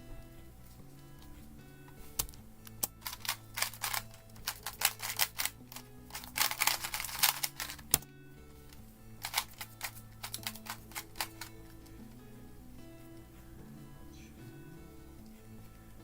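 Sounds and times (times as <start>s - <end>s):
quiet background music: 0.0s - 16.0s
puzzle cube clacking: 2.1s - 8.1s, 9.2s - 12.0s.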